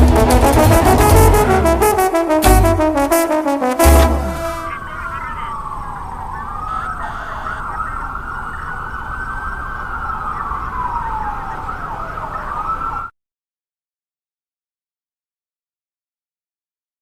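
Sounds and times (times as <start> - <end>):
low rumble: 0.0 - 3.0
wailing siren: 0.0 - 13.1.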